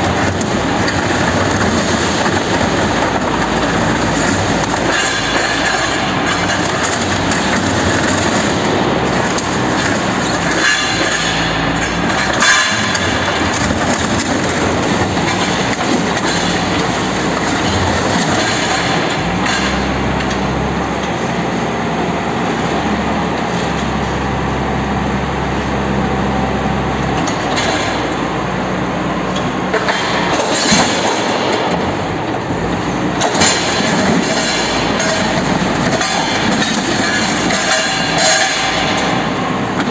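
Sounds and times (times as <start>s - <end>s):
heavy machinery crushing refrigerator: 0.0s - 39.9s
sharp metal clanks: 2.0s - 19.8s, 33.2s - 39.9s.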